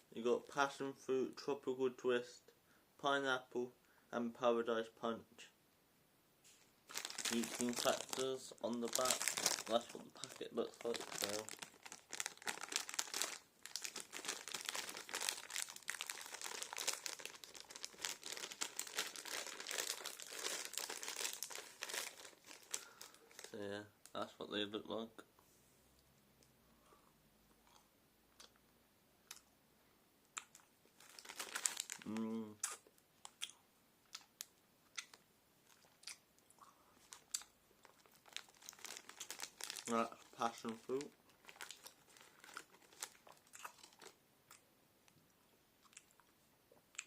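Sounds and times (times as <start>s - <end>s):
plastic packet crinkling: 6.9s - 23.6s, 31.0s - 32.2s, 37.0s - 44.2s
faint chewing of gummy sweets: 26.8s - 28.6s, 30.3s - 47.0s.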